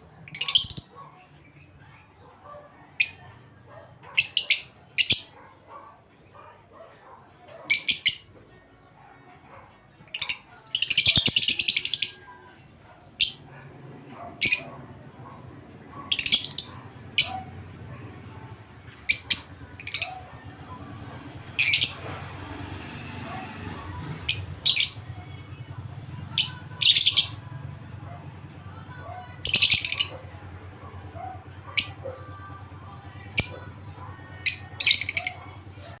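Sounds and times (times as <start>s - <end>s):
small birds chirping: 0.1s - 2.2s, 2.8s - 5.4s, 7.5s - 8.3s, 10.0s - 36.0s.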